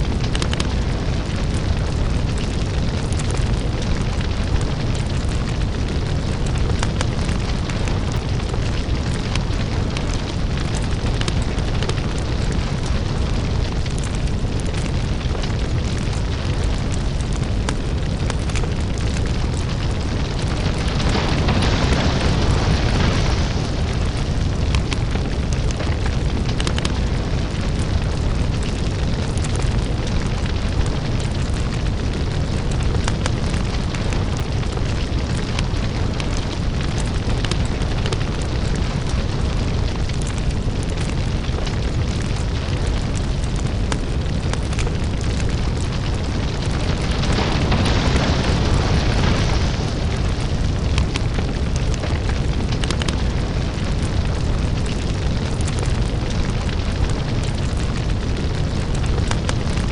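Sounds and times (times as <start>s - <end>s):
deep steady rumble: 0.0s - 59.9s
fire crackling and popping: 0.0s - 59.9s.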